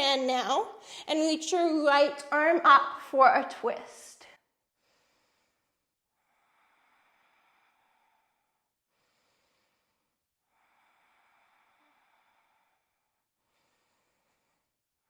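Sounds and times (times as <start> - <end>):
faint slow breaths: 4.7 - 15.0.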